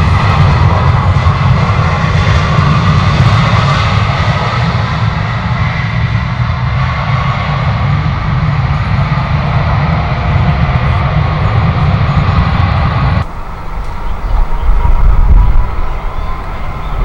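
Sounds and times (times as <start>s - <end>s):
jet engines running: 0.0s - 17.0s
deep low rumble: 10.8s - 17.0s.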